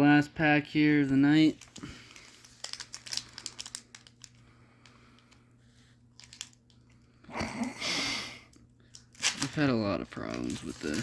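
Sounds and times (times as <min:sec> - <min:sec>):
foil wrapper tearing and crinkling: 0:01.4 - 0:04.4, 0:06.1 - 0:06.8, 0:08.9 - 0:11.0.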